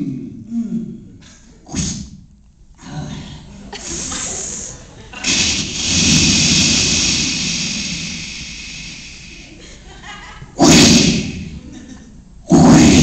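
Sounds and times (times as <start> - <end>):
vocal swoop: 0.0 - 2.2, 2.8 - 9.6, 10.6 - 11.8, 12.5 - 13.0
vocal rushing hiss: 1.7 - 2.2, 2.8 - 11.8, 12.5 - 13.0
mouth-made hisses: 3.8 - 10.0, 10.6 - 11.8.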